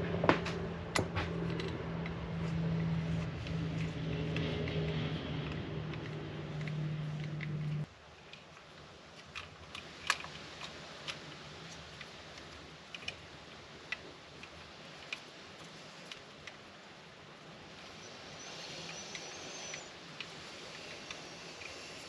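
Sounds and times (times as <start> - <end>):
steady low hum: 0.0 - 8.1.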